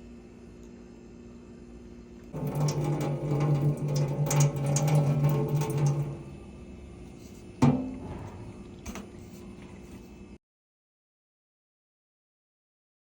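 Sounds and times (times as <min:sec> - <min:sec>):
water dispenser valve hum: 0:02.2 - 0:10.1.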